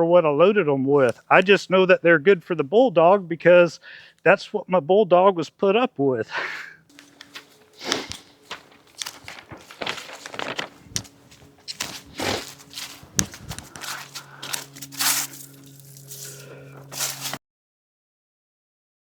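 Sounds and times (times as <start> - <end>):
rustling and crinkling of handling: 6.9 - 17.4.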